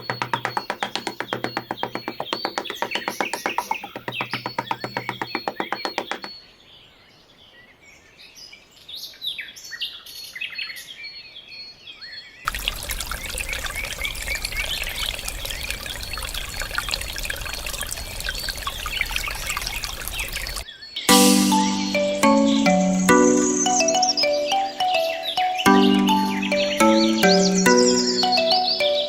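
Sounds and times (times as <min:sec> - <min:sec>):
pouring water rushing: 0:00.0 - 0:06.3, 0:12.5 - 0:20.6.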